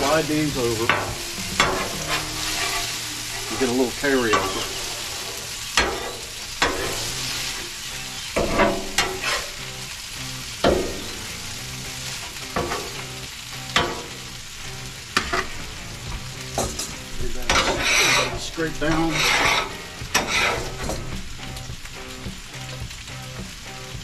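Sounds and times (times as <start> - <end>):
metal spatula scraping griddle: 0.0 - 7.7, 8.3 - 9.9, 12.1 - 13.1, 16.6 - 21.1
vegetables sizzling on griddle: 0.0 - 24.0.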